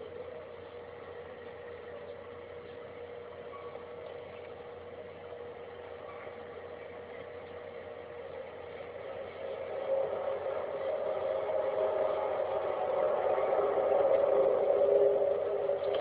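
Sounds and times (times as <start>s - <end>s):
steady droning hum: 0.0s - 16.0s.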